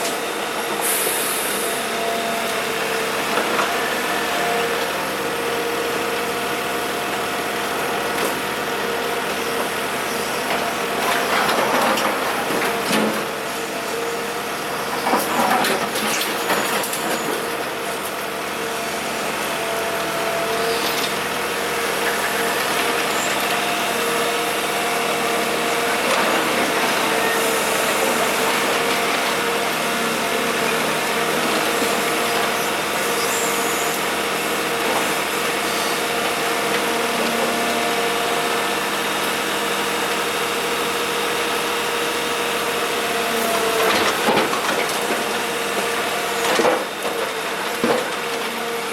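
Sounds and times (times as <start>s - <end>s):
diesel engine running: 16.5s - 48.9s.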